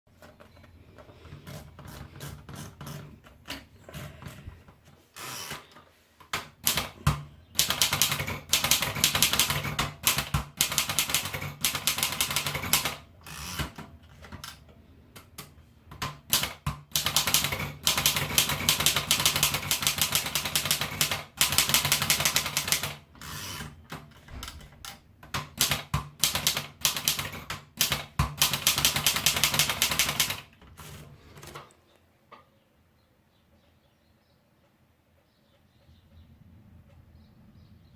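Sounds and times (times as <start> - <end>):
typewriter keys striking: 6.4 - 14.5, 15.9 - 31.6.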